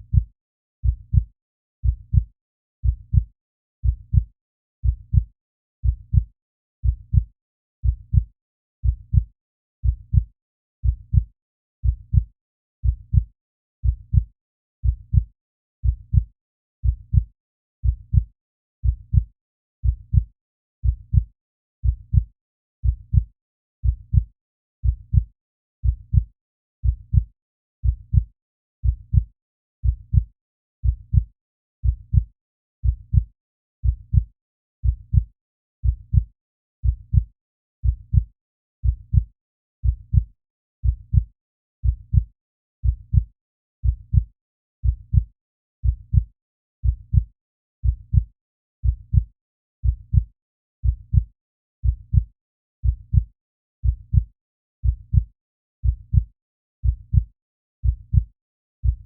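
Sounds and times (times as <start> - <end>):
heartbeat double thump: 47.8 - 48.2, 53.8 - 54.2, 54.8 - 55.2, 55.8 - 56.2, 56.8 - 57.2.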